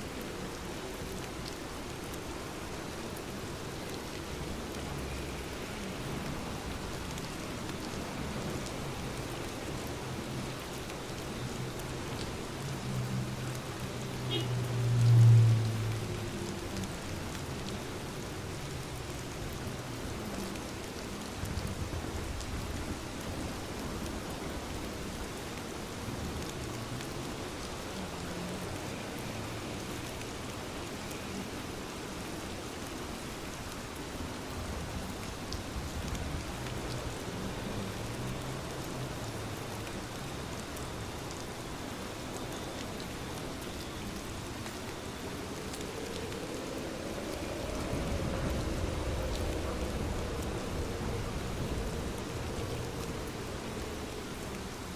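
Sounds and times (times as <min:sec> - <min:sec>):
steady rain hiss: 0:00.0 - 0:54.9
low rumble: 0:46.1 - 0:54.1.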